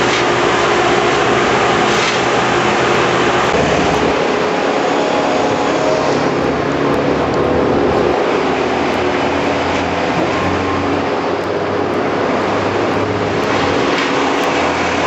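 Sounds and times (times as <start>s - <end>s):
heavy engine running: 0.0s - 15.0s.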